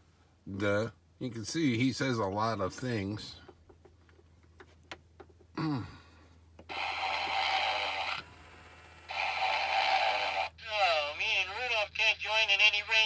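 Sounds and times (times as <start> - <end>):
hissy snore from toy speaker: 6.7 - 8.2, 9.1 - 10.5.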